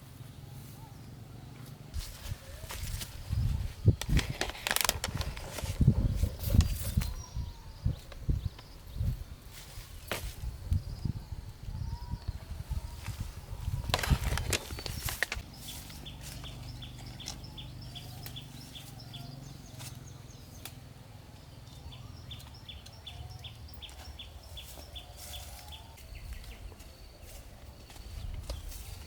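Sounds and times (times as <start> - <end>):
clicks and rustles: 3.9 - 7.2, 13.8 - 15.4.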